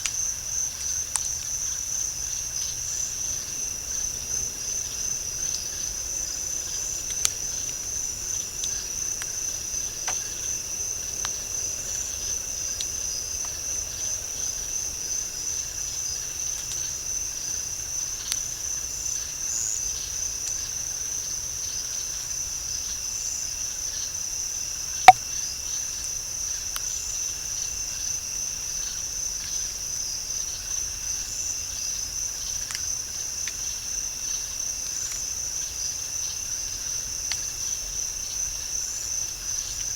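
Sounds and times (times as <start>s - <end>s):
night insects chorus: 0.0s - 24.9s, 25.6s - 39.9s.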